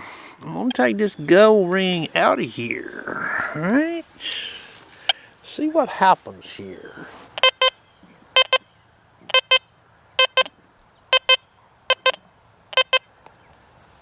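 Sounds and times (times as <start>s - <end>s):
metal detector double beeps: 7.4s - 7.8s, 8.4s - 8.7s, 9.3s - 10.5s, 11.1s - 13.1s.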